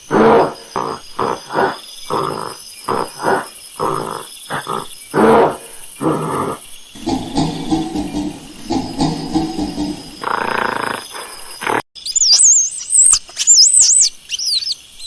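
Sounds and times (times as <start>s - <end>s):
monkey calling: 0.0s - 11.8s.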